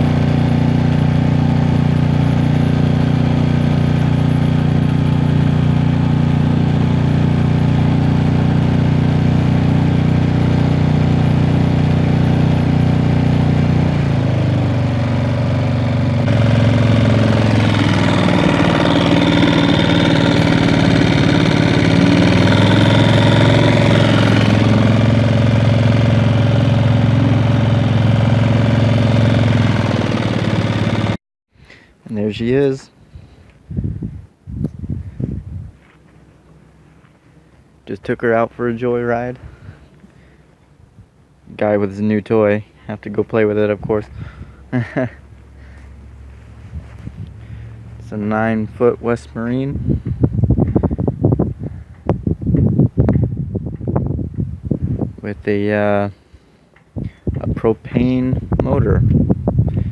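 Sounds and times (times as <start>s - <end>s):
outboard motor running: 0.0s - 31.2s, 43.9s - 51.1s.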